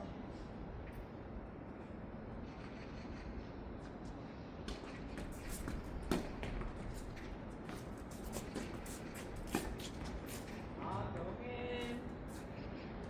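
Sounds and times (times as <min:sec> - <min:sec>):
tennis balls hit and bouncing: 0:04.7 - 0:10.7.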